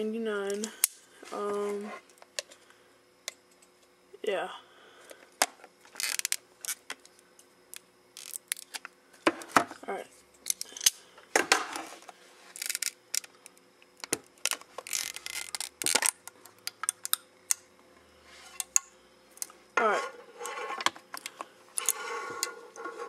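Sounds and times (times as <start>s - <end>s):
packaging rustling and scraping: 14.4s - 16.2s, 20.0s - 23.0s.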